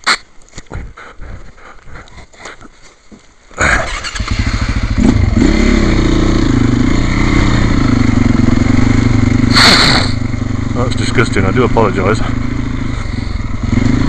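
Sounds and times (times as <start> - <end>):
motorcycle engine starting and running: 3.6 - 14.0.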